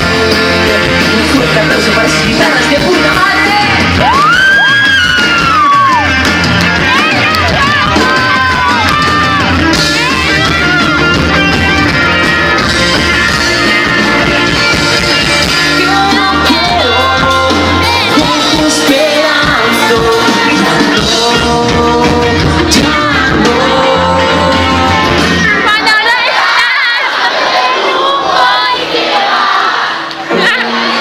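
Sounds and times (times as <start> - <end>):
lead vocalist singing: 0.0 - 6.0, 15.2 - 28.8
live pop-rock band playing: 0.0 - 31.0.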